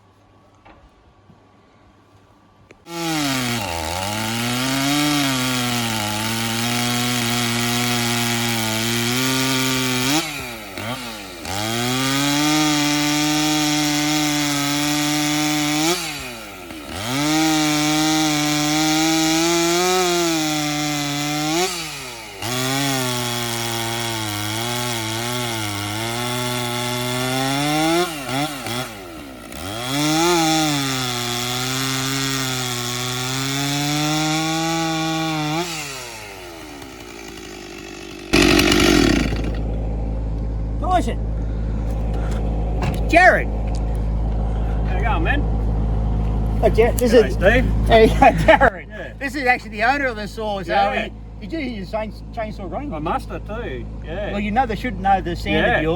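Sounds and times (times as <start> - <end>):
chainsaw cutting wood: 2.8 - 40.2, 50.6 - 51.1.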